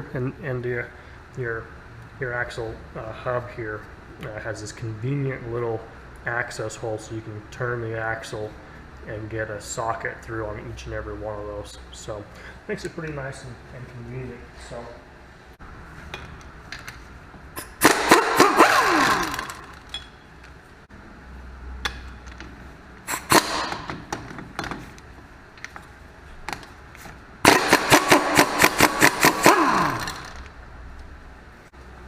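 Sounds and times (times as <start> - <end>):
impact wrench hammering: 17.6 - 20.2, 23.1 - 24.8, 27.4 - 30.4.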